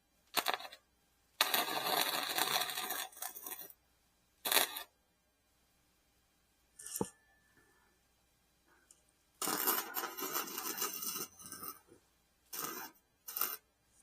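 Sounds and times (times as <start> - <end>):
arc welding crackle: 0.3 - 0.8, 1.4 - 3.8, 4.5 - 4.9, 9.4 - 11.8, 12.5 - 13.6.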